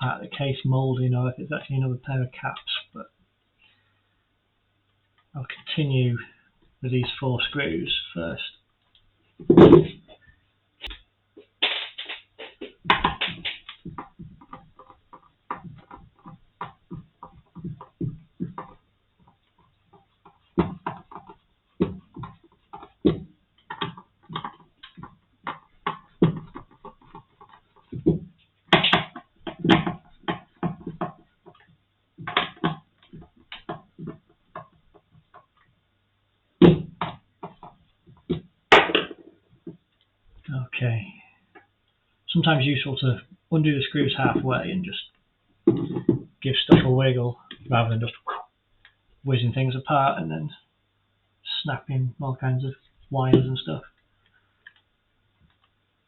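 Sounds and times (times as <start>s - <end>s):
knocks on plastic case: 12.8s - 18.8s.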